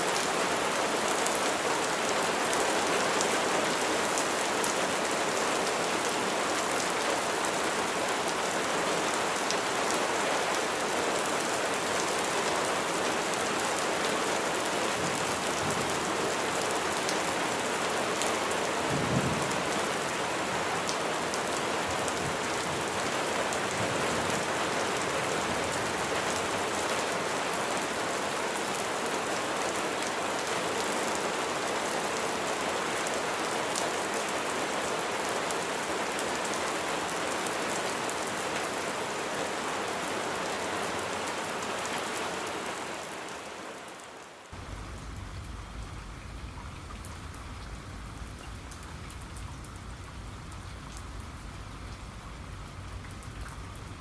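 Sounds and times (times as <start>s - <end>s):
heavy rain falling: 0.0s - 54.0s
raindrops ticking on surfaces: 43.2s - 54.0s.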